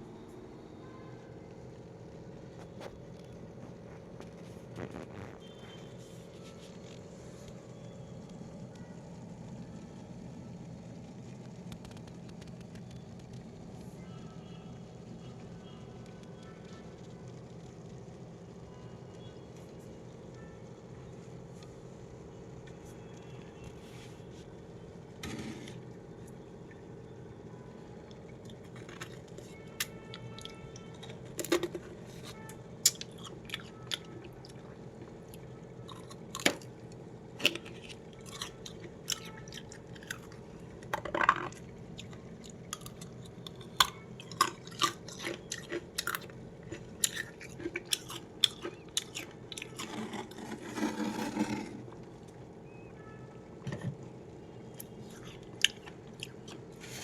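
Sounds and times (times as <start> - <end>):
background hum: 0.0 - 57.0
crunchy chewing of frost: 2.6 - 7.8, 28.1 - 52.3, 54.8 - 57.0.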